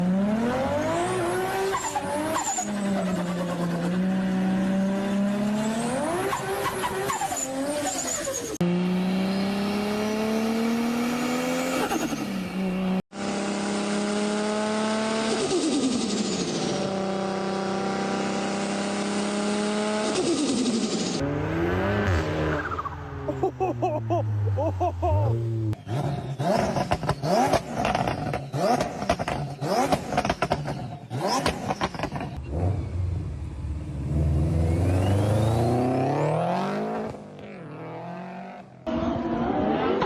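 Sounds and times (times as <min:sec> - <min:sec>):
turbocharged car engine revving: 0:08.6 - 0:22.9, 0:23.8 - 0:40.0.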